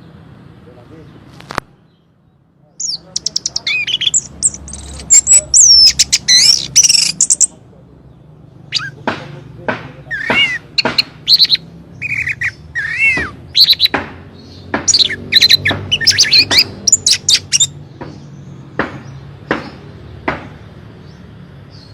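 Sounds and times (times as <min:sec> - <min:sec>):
sharp bird call notes: 0:02.8 - 0:07.6, 0:08.7 - 0:09.0, 0:10.0 - 0:17.8
thrush singing whistled song: 0:02.8 - 0:07.6, 0:08.7 - 0:09.0, 0:10.1 - 0:18.3.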